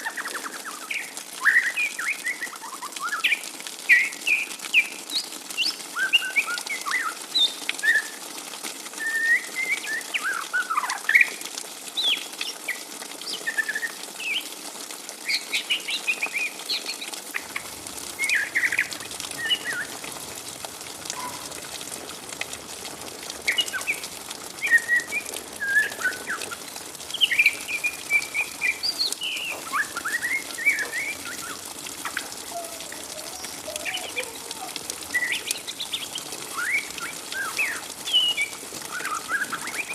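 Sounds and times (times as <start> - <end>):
faint steady hiss: 0.0 - 39.9
young bird chattering: 21.1 - 21.7, 28.6 - 35.8.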